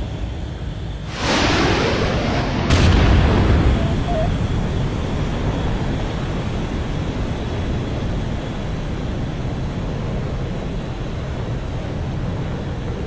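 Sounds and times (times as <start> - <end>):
low jet-like rumble: 0.0 - 13.0
rocket motor roaring: 1.1 - 4.9.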